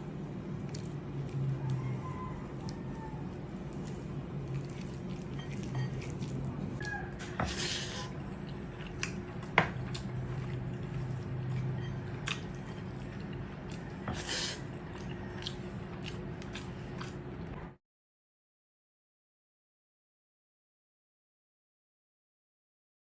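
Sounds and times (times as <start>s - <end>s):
crunchy chewing: 0.2s - 17.6s.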